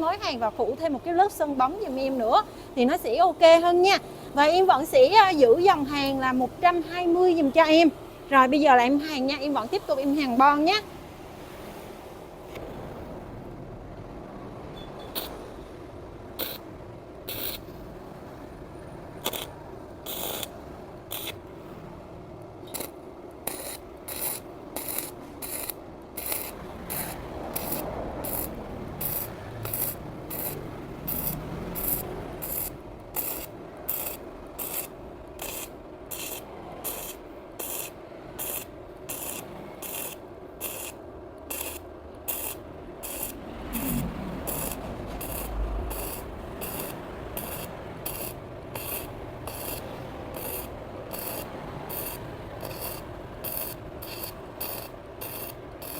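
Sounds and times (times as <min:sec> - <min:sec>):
welding arc crackling: 0:16.4 - 0:16.6, 0:17.3 - 0:17.7, 0:19.2 - 0:21.4, 0:22.7 - 0:55.9
welder humming: 0:19.2 - 0:20.5, 0:21.1 - 0:21.4, 0:22.7 - 0:55.9.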